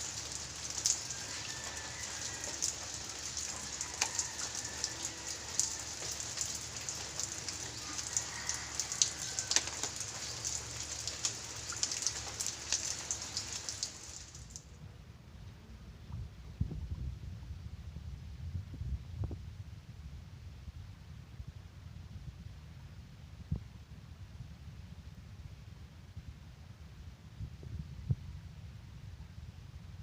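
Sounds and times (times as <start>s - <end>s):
sharp raindrop impacts: 0.0s - 14.7s
steady rain falling: 0.0s - 14.7s.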